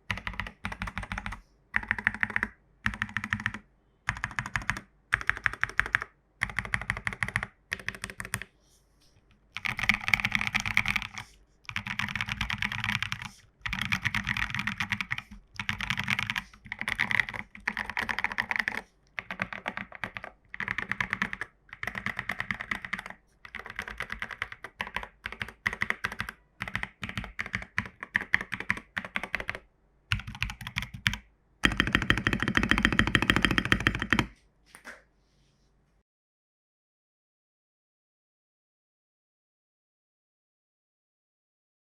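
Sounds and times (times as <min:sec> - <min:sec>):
mechanical keyboard typing: 0:00.1 - 0:08.5, 0:09.6 - 0:34.3.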